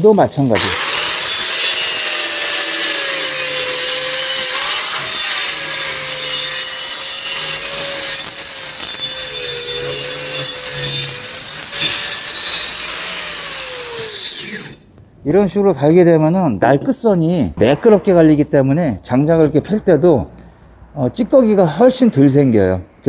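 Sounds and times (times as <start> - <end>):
angle grinder grinding metal: 0.5 - 14.9.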